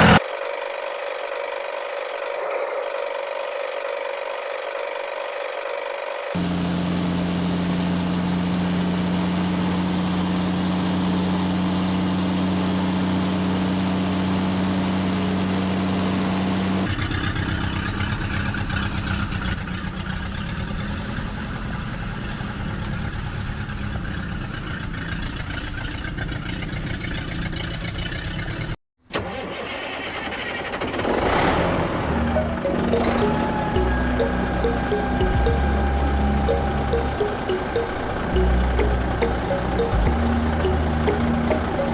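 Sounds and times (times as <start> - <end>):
vehicle engine idling and chugging: 6.4 - 28.8, 32.1 - 41.9.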